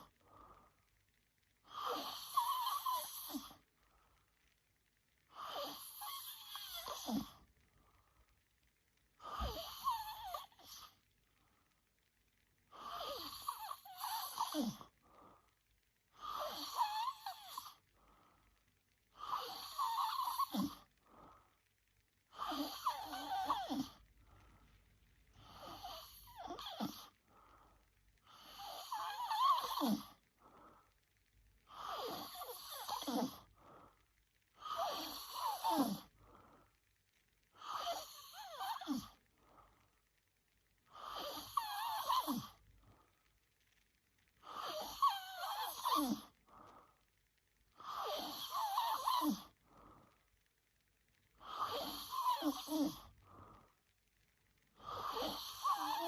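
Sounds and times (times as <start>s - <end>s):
woman snoring: 1.6s - 3.6s, 5.3s - 7.4s, 9.2s - 10.9s, 12.7s - 14.9s, 16.2s - 17.8s, 19.2s - 20.9s, 22.3s - 24.0s, 25.4s - 27.2s, 28.2s - 30.2s, 31.7s - 33.5s, 34.6s - 36.1s, 37.6s - 39.2s, 40.9s - 42.6s, 44.4s - 46.3s, 47.7s - 49.6s, 51.4s - 53.1s, 54.8s - 56.0s.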